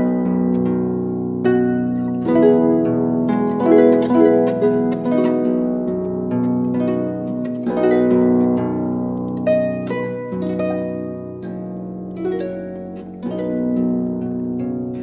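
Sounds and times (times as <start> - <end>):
slow harp music: 0.0 - 15.0.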